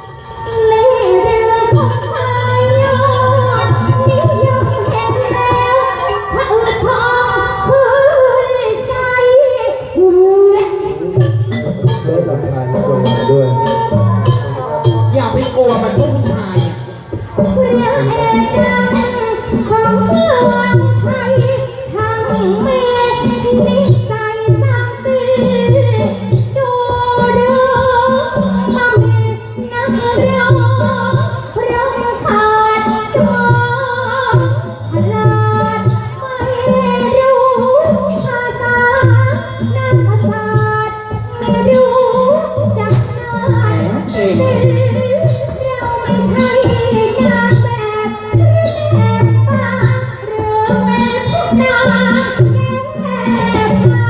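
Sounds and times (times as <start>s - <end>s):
band accompaniment: 0.0s - 54.0s.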